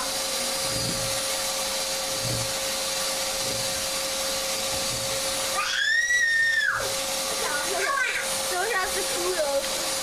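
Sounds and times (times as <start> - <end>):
vacuum cleaner running: 0.0 - 10.0.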